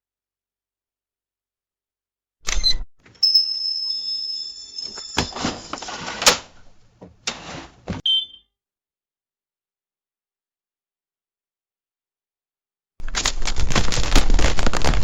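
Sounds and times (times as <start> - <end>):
short high beep: 3.2 - 5.4, 8.0 - 8.4
cash register bell ringing: 3.2 - 6.4
cash register drawer clatter: 4.6 - 8.0.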